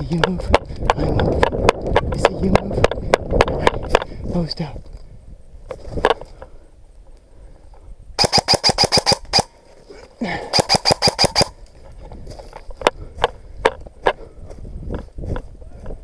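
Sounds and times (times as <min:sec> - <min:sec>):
airsoft rifle full-auto bursts: 0:08.2 - 0:09.5, 0:10.5 - 0:11.6.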